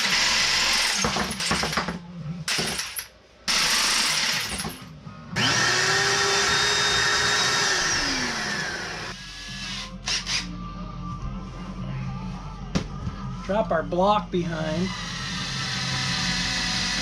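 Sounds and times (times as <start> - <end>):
power drill driving screws: 0.0 - 1.7, 2.6 - 4.6, 5.4 - 10.5, 14.9 - 17.0.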